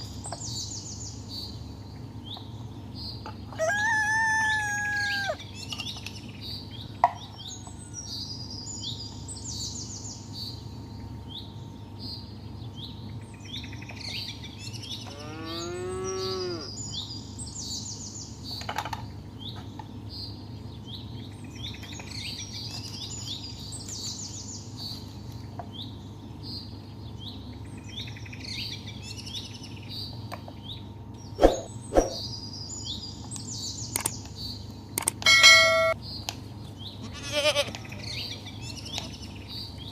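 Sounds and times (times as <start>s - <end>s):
small birds chirping: 0.0s - 39.9s
cow mooing: 15.0s - 16.7s.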